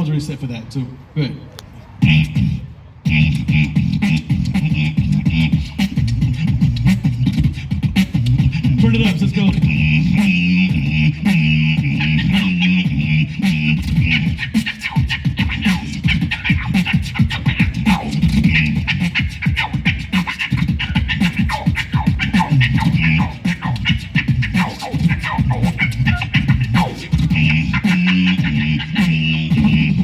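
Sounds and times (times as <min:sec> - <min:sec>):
beatbox mouth drum clicks: 0:01.6 - 0:30.0
heavy bass line: 0:02.0 - 0:30.0.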